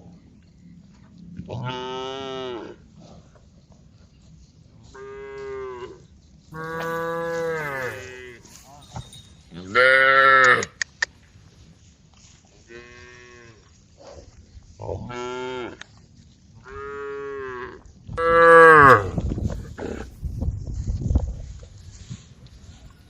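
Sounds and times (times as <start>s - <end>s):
cattle mooing: 6.6s - 8.5s.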